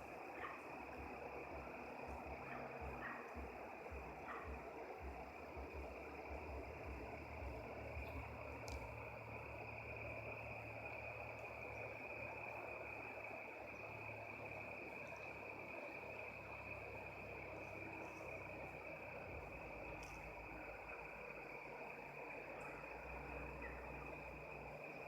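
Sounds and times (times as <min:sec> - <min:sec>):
crickets chirring: 0:00.0 - 0:25.0
faint click: 0:08.0 - 0:08.9, 0:20.0 - 0:20.3.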